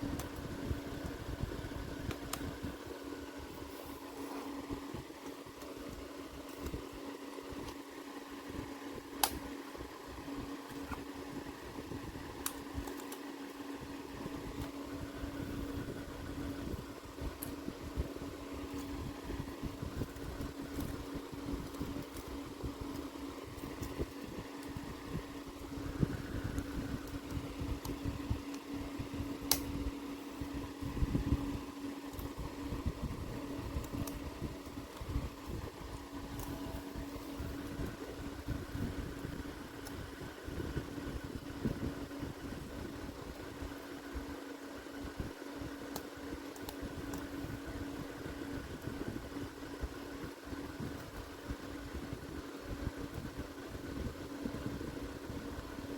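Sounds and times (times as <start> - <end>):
mechanical hum: 0.0 - 55.9
sharp clicks: 29.5 - 29.7.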